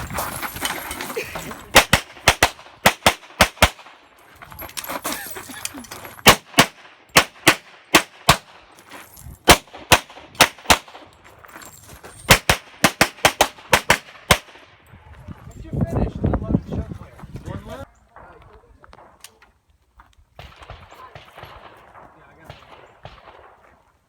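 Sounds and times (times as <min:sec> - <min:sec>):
handgun shots: 0:01.7 - 0:04.0, 0:06.2 - 0:08.6, 0:09.5 - 0:11.1.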